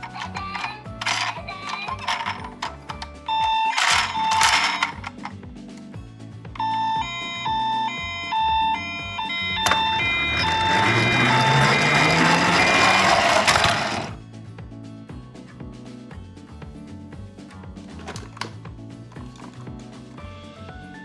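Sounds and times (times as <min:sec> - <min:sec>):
toy two-tone siren: 0:00.0 - 0:05.3, 0:06.6 - 0:14.2
click: 0:00.0 - 0:05.9, 0:17.5 - 0:19.6.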